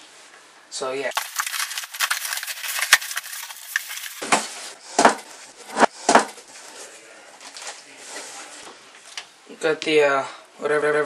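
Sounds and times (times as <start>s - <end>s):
packaging rustling and scraping: 1.1s - 4.8s.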